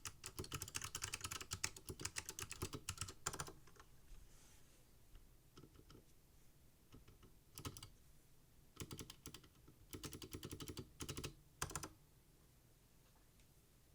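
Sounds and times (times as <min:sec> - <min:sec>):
mechanical keyboard typing: 0:00.0 - 0:03.6, 0:07.6 - 0:07.9, 0:08.8 - 0:11.9.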